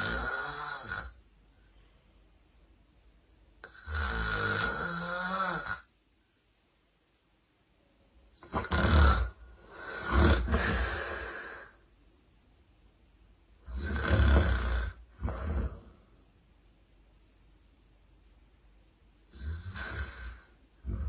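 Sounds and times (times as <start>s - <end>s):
woman snoring loudly: 0.0s - 1.2s, 3.6s - 5.9s, 8.4s - 11.8s, 13.6s - 15.9s, 19.3s - 21.0s.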